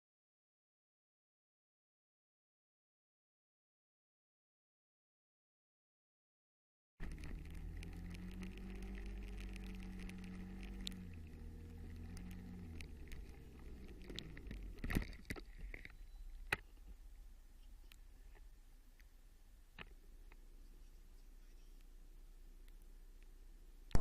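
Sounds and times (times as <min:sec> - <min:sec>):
car engine running: 0:07.0 - 0:15.0.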